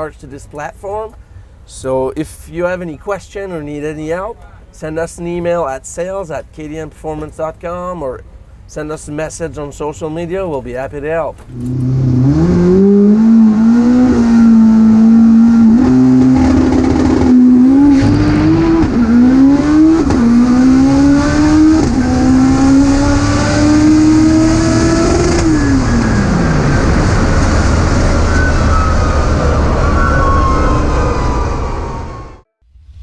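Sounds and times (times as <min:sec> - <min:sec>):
race car engine accelerating: 0:11.5 - 0:32.4.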